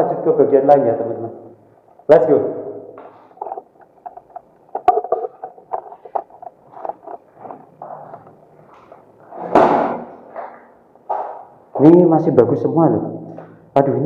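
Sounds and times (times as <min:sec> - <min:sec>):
handling noises: 0:03.0 - 0:11.5
footsteps: 0:03.0 - 0:11.6.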